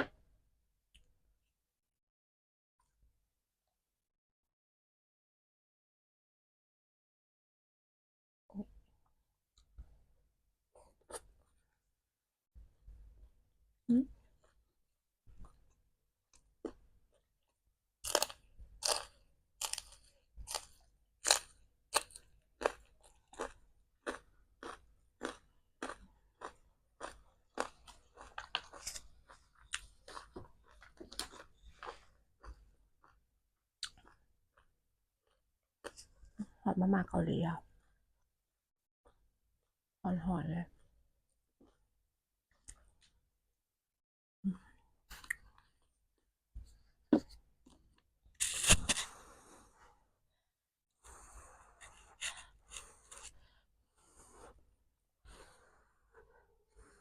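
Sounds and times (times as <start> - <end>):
chewing food: 18.0 - 33.2.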